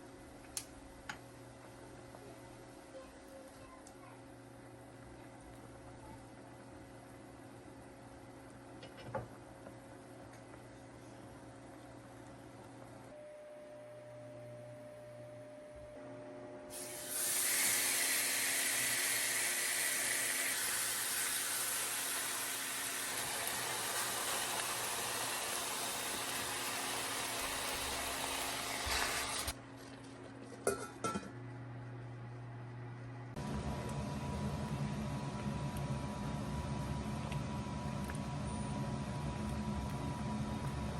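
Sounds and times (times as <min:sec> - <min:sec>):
kitchenware clinking: 0:30.5 - 0:31.4.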